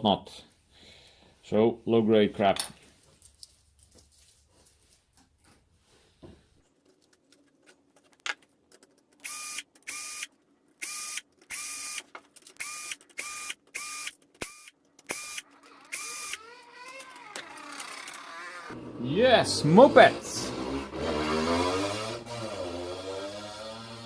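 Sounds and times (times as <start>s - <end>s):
small electric motor whine: 12.6s - 18.8s.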